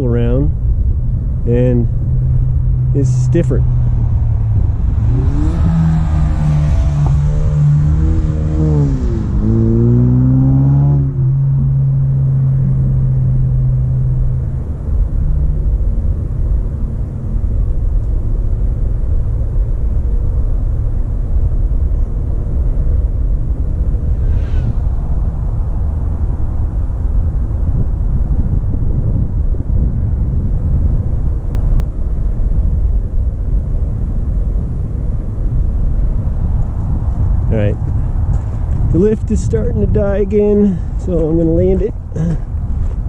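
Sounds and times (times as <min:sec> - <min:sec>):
low steady rumble: 0:00.0 - 0:43.0
steady low hum: 0:00.0 - 0:43.0
vehicle engine running: 0:00.0 - 0:43.0.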